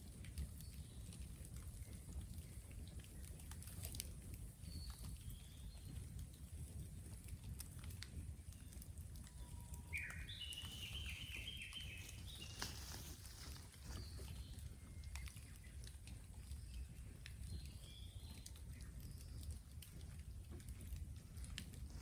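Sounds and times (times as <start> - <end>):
bamboo bonfire crackling and popping: 0.0 - 22.0
bird singing whistled notes: 9.4 - 12.9.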